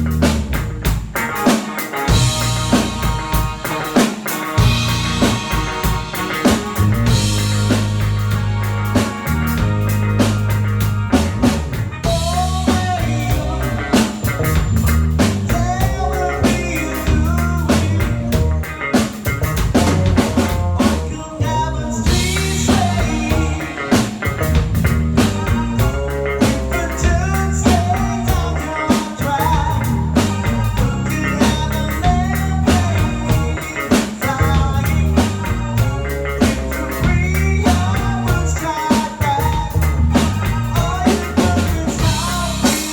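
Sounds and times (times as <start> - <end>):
bass line: 0.0 - 1.5, 2.1 - 42.9
band playing rock song: 0.0 - 42.9
drum kit beat with rimshots: 0.0 - 42.9
guitar: 0.0 - 42.9
wavering melody line: 2.1 - 14.7.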